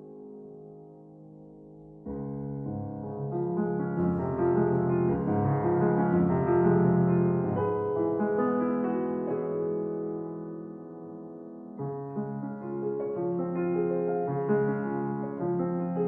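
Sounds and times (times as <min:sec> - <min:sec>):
gentle piano music: 0:00.0 - 0:16.0.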